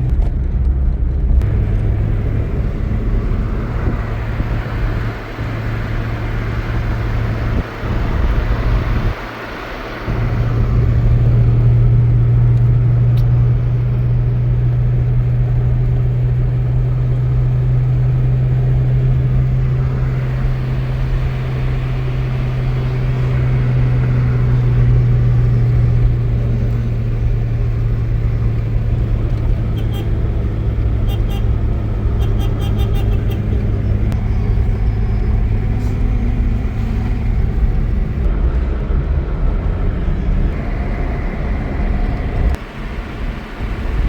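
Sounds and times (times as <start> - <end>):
engine running low drone: 0.0 - 44.0.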